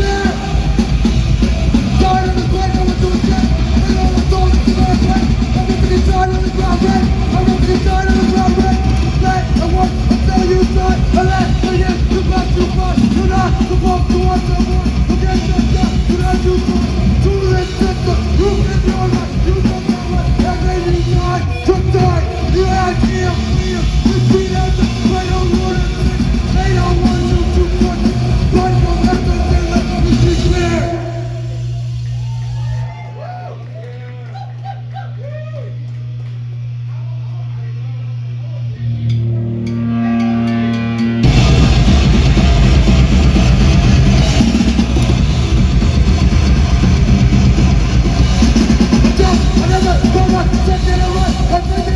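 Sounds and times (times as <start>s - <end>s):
distorted guitars: 0.0s - 33.0s, 35.8s - 51.9s
rock band playing loudly: 0.0s - 33.0s, 38.9s - 51.9s
bass: 0.0s - 51.9s
drums: 0.0s - 51.9s
faint crowd chatter: 0.0s - 51.9s
person yelling vocals: 49.0s - 51.9s.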